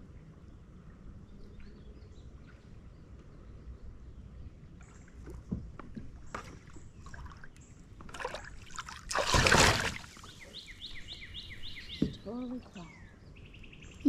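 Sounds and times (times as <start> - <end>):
paddle swishing through water: 4.8 - 12.0
rush of water: 8.1 - 10.6
paddle knocks: 11.9 - 12.3.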